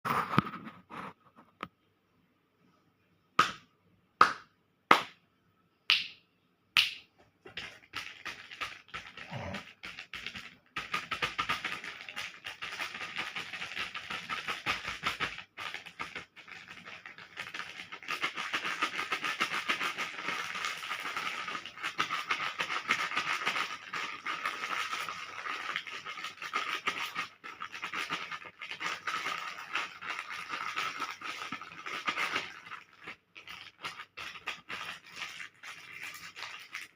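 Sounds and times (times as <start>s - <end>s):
candy wrappers crinkling: 7.5s - 36.9s.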